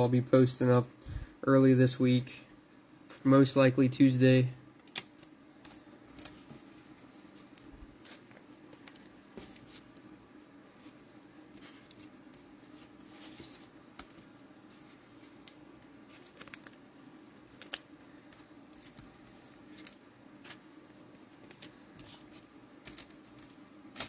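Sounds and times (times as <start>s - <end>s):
low steady hum: 0.0s - 24.0s
wrapper crinkling: 16.1s - 16.8s.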